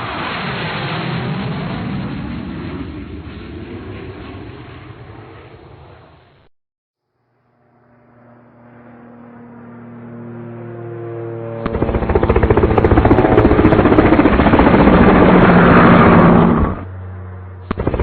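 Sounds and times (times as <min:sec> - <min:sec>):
helicopter engine tones: 0:07.3 - 0:18.0
rapid helicopter rotor chop: 0:07.6 - 0:18.0.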